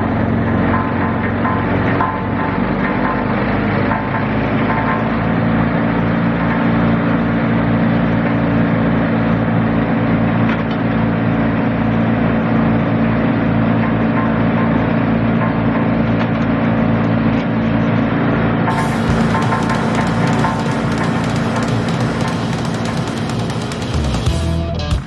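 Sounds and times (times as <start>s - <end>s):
small engine pulsing: 18.7s - 24.6s.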